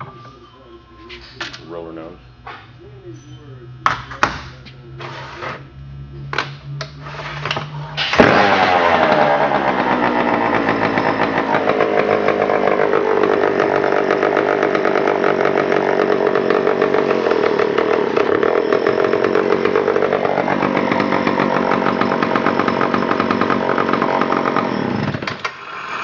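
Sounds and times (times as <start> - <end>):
chainsaw engine running loud: 8.0 - 25.4.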